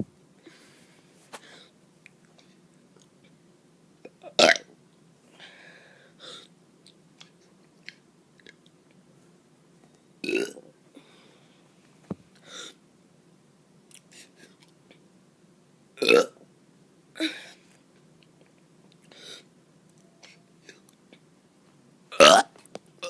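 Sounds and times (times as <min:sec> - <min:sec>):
child burping: 0:04.1 - 0:04.7, 0:22.2 - 0:22.5.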